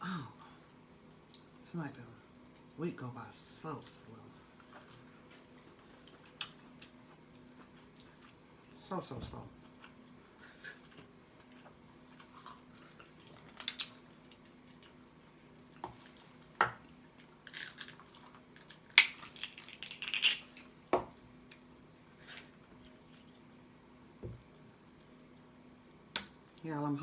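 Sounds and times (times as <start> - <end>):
crab shell cracking: 13.4 - 14.4, 17.4 - 20.7.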